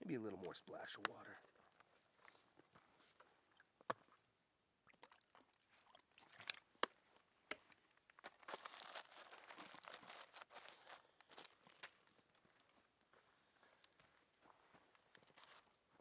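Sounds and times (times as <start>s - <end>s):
tin foil crinkling: 8.2s - 12.1s.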